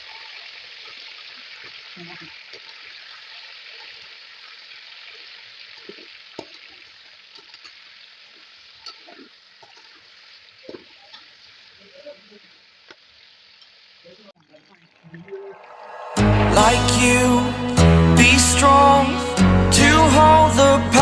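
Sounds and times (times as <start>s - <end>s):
chicken sizzling in oil: 0.0s - 14.4s.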